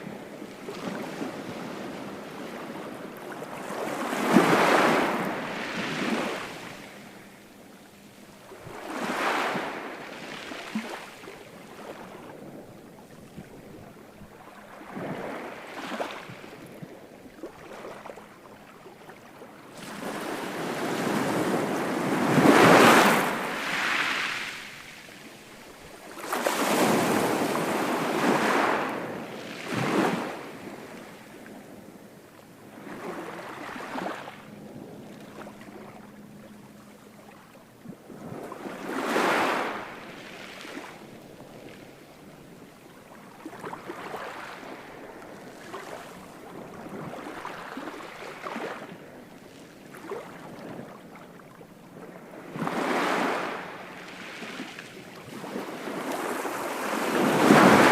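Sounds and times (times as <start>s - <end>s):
surf washing: 0.0s - 12.7s, 19.7s - 31.9s, 49.8s - 57.9s
waves crashing on shore: 0.7s - 7.1s, 8.6s - 11.1s, 19.8s - 31.0s, 38.4s - 41.0s, 52.6s - 57.9s.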